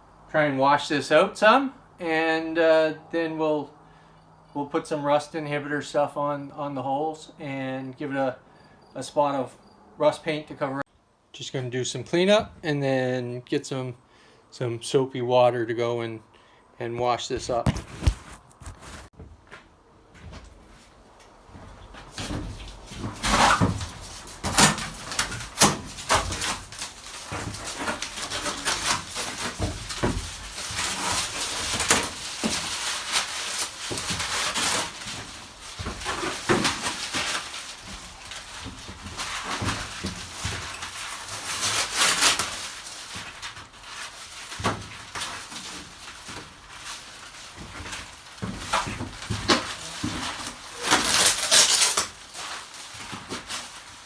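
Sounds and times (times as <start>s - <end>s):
brushing scrapes: 17.5s - 19.2s.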